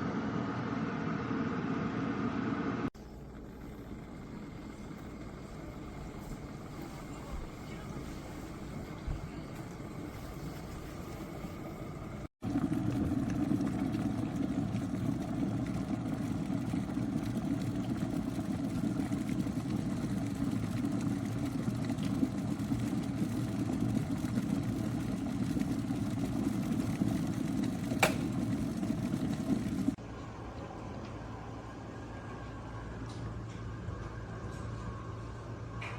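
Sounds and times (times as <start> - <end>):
kettle water boiling: 3.0 - 31.3.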